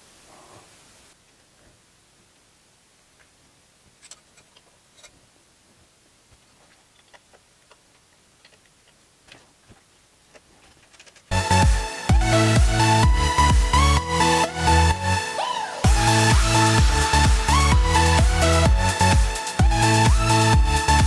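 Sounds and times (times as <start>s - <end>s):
electronic dance music: 11.3s - 21.0s.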